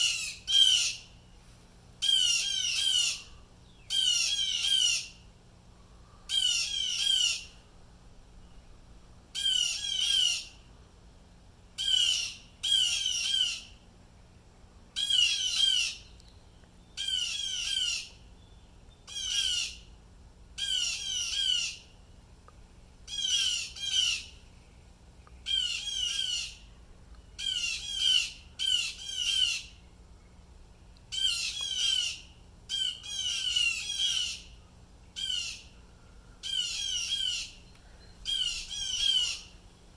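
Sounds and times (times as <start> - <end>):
blue jays calling: 2.0 - 5.2, 6.3 - 7.5, 35.2 - 35.7, 36.4 - 39.6.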